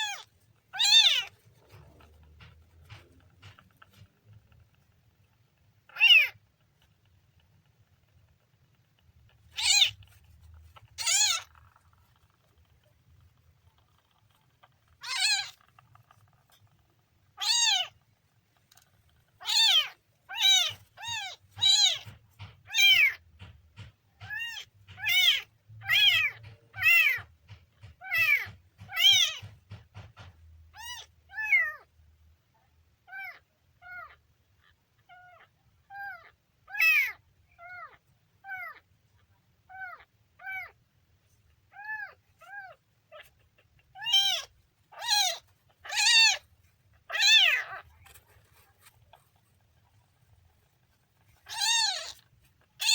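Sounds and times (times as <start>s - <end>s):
kitten meowing: 0.0s - 1.4s, 5.9s - 6.4s, 9.5s - 10.1s, 10.7s - 11.8s, 15.0s - 15.7s, 17.4s - 18.0s, 19.4s - 23.2s, 24.2s - 27.3s, 30.7s - 31.9s, 41.7s - 46.5s, 47.1s - 48.2s, 51.4s - 52.9s.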